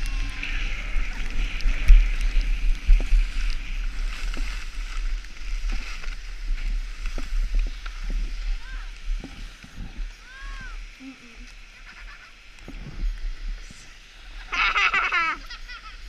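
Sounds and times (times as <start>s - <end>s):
wind buffeting microphone: 0.0s - 11.4s
skis scraping over snow: 0.0s - 16.0s.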